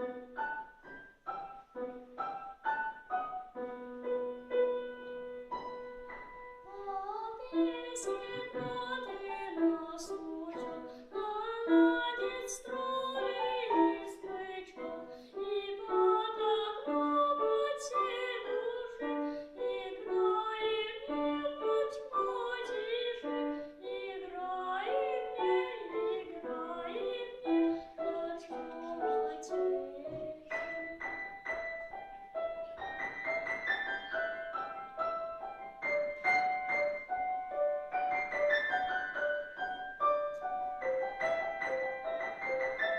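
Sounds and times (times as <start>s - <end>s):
piano accompaniment: 0.0s - 42.9s
boy singing: 6.7s - 30.9s.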